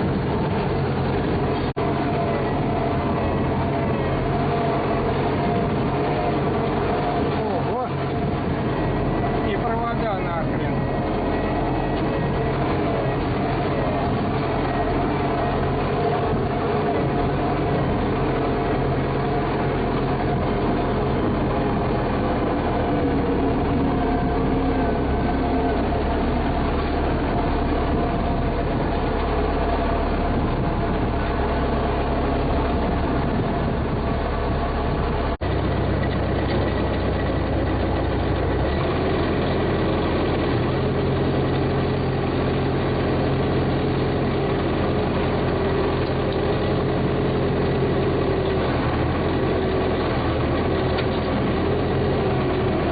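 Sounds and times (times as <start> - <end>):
vehicle engine running: 0.0 - 52.9.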